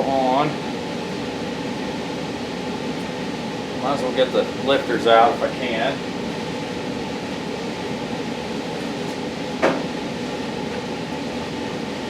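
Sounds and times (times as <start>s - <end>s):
blower fan hum: 0.0s - 12.0s
short sharp knock: 9.6s - 9.9s.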